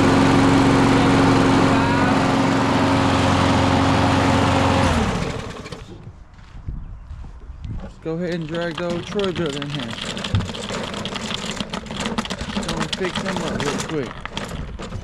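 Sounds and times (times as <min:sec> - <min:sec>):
engine winding down: 0:00.0 - 0:06.0
lawn mower engine running: 0:00.0 - 0:06.0, 0:08.4 - 0:15.0.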